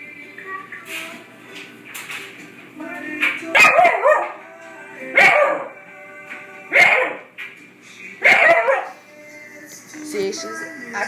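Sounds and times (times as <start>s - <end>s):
background music: 2.4s - 11.0s
dog barking: 3.6s - 4.4s, 5.2s - 5.7s, 6.7s - 7.3s, 8.2s - 9.0s.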